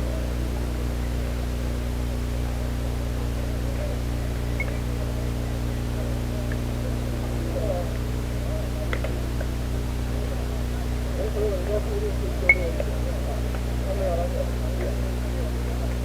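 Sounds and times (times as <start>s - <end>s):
distant voices: 0.0s - 16.0s
low electrical hum: 0.0s - 16.0s
light clicks: 4.4s - 5.0s, 8.9s - 9.6s.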